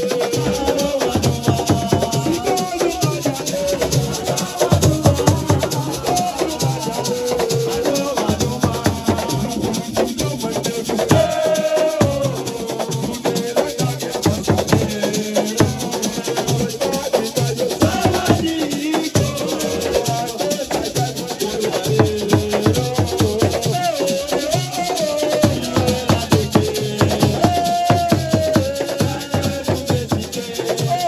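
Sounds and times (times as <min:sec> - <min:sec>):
drums keeping a beat: 0:00.0 - 0:31.0
person singing: 0:00.0 - 0:31.0
shaker rattling: 0:00.0 - 0:31.0.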